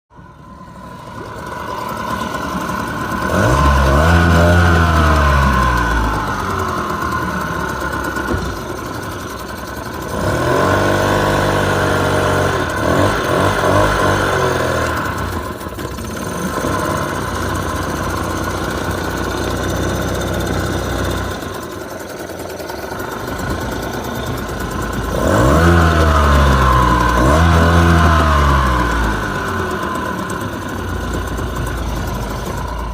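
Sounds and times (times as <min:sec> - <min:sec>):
outboard motor revving: 0:00.2 - 0:32.9.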